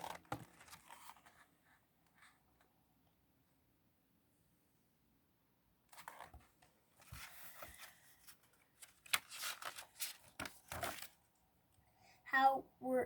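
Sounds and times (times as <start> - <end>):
paper pages turning: 0.0 - 1.5, 5.9 - 11.2.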